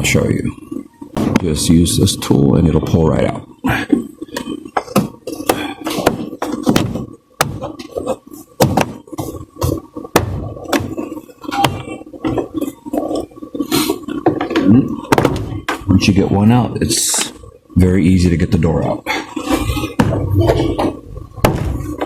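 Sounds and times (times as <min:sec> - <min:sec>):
sharp irregular knocks: 0:04.3 - 0:07.9, 0:08.6 - 0:12.6, 0:14.2 - 0:15.9, 0:20.0 - 0:22.0.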